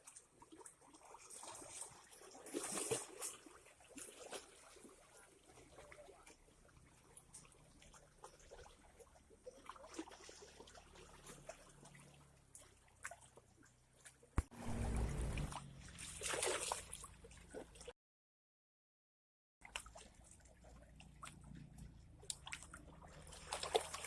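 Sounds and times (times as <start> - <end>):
faint trickling water: 0.0 - 18.0, 19.6 - 24.0
loud low rumbling: 14.5 - 15.7
loud rushing splash: 14.5 - 16.7.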